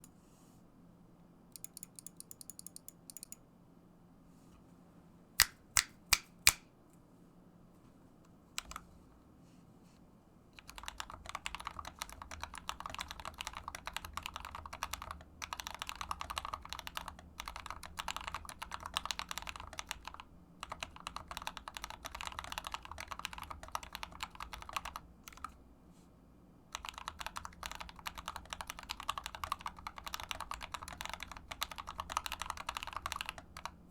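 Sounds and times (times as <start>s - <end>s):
mechanical keyboard typing: 1.6s - 3.4s, 8.6s - 8.8s, 10.6s - 25.5s, 26.7s - 33.8s.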